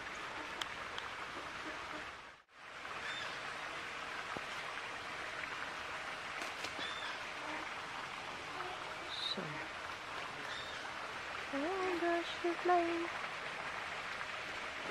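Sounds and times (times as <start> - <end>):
steady outdoor hiss: 0.0 - 14.9.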